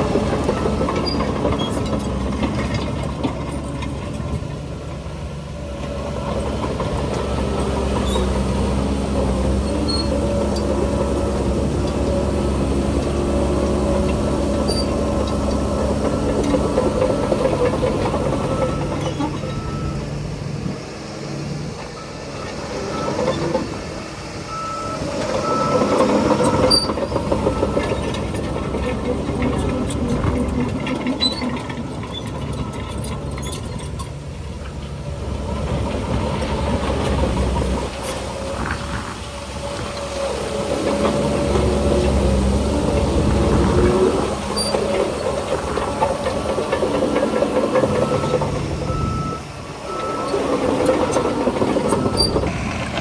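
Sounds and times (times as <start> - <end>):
diesel machinery running: 0.0 - 53.0
reversing alarm beeping: 18.3 - 20.1, 24.5 - 28.1, 47.8 - 53.0.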